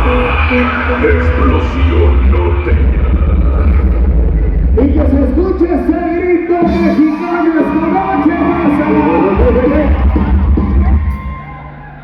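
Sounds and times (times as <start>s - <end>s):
band music with strong bass: 0.0s - 12.0s.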